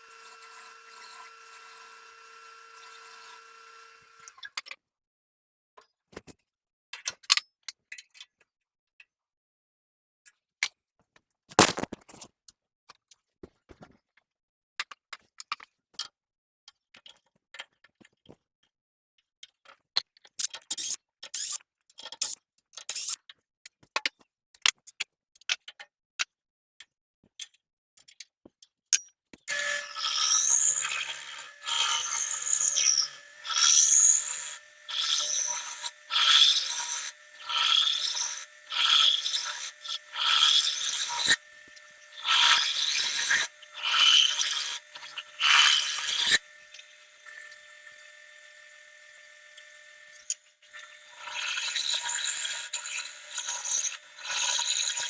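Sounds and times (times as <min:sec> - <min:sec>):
abrasive rubbing on wood: 0:29.5 - 0:48.2
wood and tools clicking: 0:29.5 - 0:55.0.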